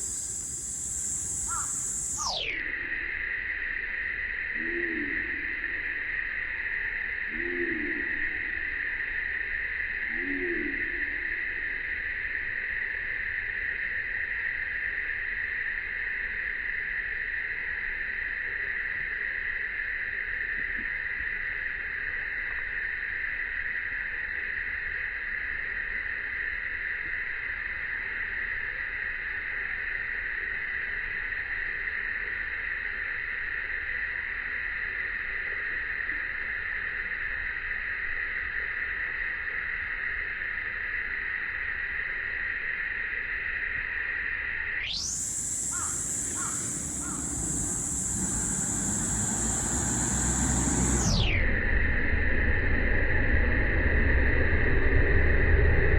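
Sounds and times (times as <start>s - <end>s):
cicada chorus drone: 0.0s - 55.9s
faint low rumble: 45.2s - 55.9s.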